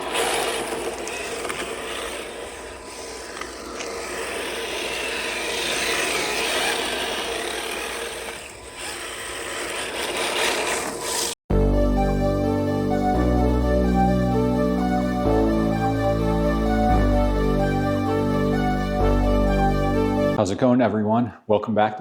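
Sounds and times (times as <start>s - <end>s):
electric rc car motor whining: 0.0s - 11.4s.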